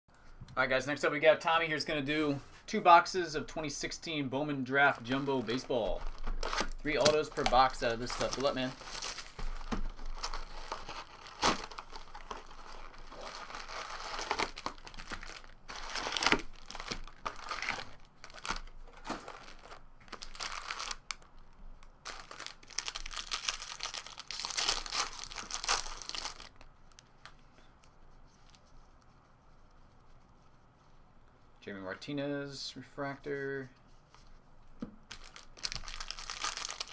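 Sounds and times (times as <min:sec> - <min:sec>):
plastic wrapping tearing and crinkling: 0:04.8 - 0:27.0, 0:35.1 - 0:36.9.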